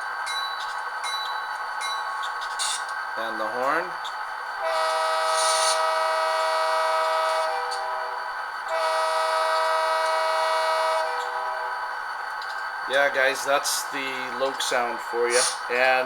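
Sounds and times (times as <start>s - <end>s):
model locomotive horn: 4.6s - 11.8s.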